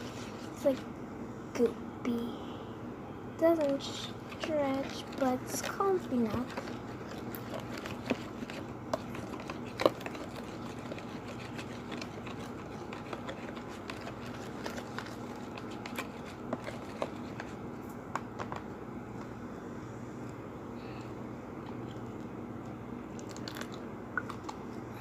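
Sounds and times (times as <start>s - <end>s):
low steady hum: 0.0s - 25.0s
slime squishing: 3.4s - 17.6s.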